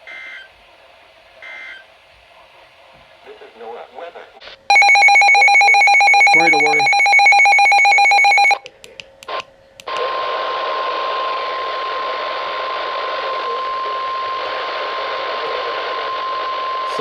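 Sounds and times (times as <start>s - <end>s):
steady alarm tone: 1.4s - 1.8s, 4.7s - 8.6s
radio static: 3.2s - 8.6s, 10.0s - 17.0s.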